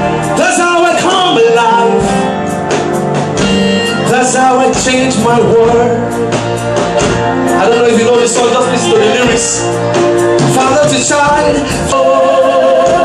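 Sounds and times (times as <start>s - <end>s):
guitar playing: 0.0s - 13.0s
voices singing: 7.5s - 13.0s.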